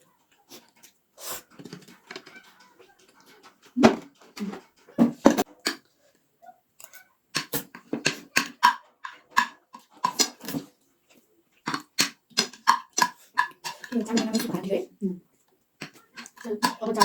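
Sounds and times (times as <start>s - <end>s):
person slurping and chewing: 6.8s - 10.8s, 11.7s - 14.4s, 15.8s - 17.0s.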